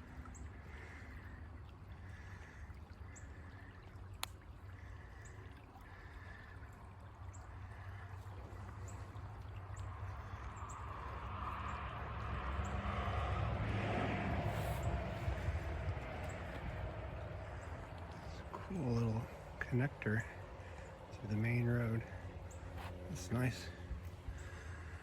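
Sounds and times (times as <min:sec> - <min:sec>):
creek water running: 0:00.0 - 0:25.0.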